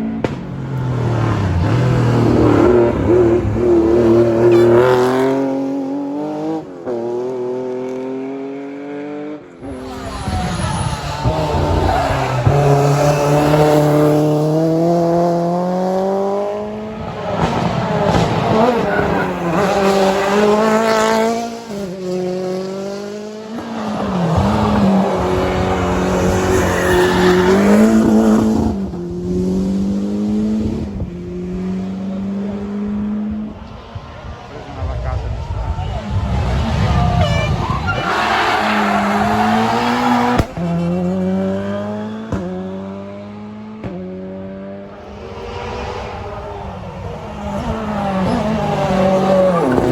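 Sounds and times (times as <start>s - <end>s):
rally car engine revving: 0.0s - 49.9s
tyre squeal: 9.6s - 13.8s, 18.4s - 20.3s, 36.8s - 41.0s.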